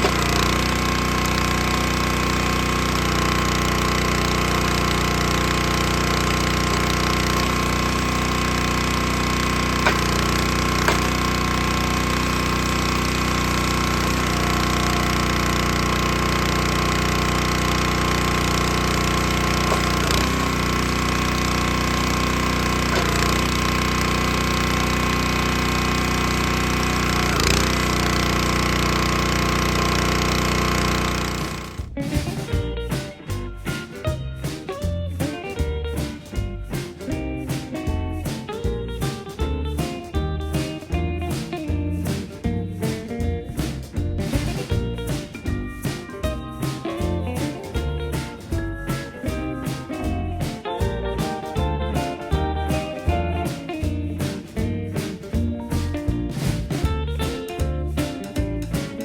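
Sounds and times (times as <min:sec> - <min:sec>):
small gasoline engine running: 0:00.0 - 0:59.0
short knocks: 0:09.8 - 0:11.4.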